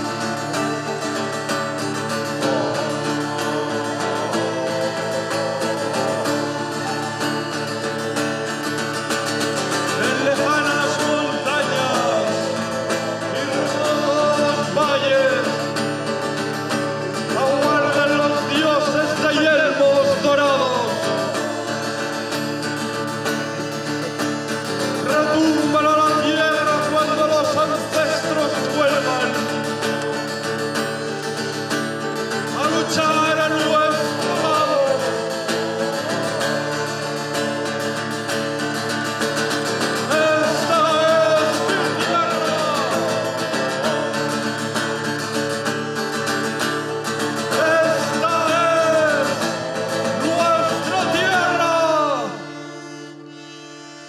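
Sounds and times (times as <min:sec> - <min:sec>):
person singing: 0:00.0 - 0:52.8
strummed guitar: 0:00.0 - 0:54.0.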